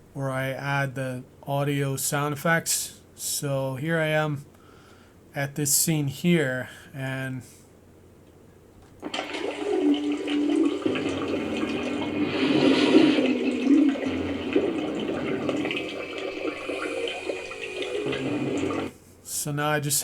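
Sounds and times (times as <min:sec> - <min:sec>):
rushing water sound effect: 0:09.1 - 0:18.9.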